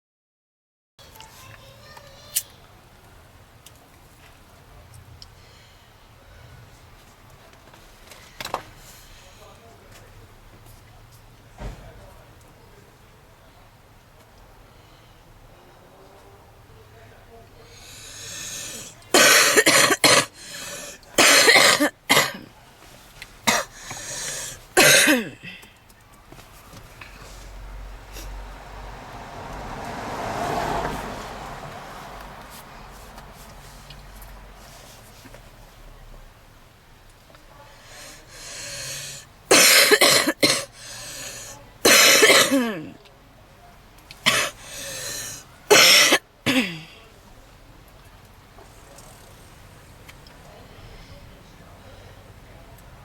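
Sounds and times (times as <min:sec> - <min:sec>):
heavy wheezing breaths: 0:17.6 - 0:21.4, 0:23.4 - 0:25.8, 0:37.7 - 0:42.9, 0:44.2 - 0:47.1
woman coughing harshly: 0:18.2 - 0:22.5, 0:23.5 - 0:25.6, 0:38.0 - 0:43.0, 0:44.3 - 0:47.0.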